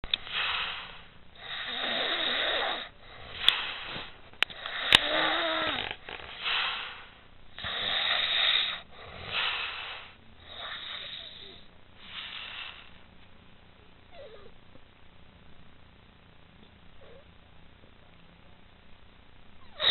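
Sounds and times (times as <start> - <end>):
woman snoring: 0.0 - 12.9.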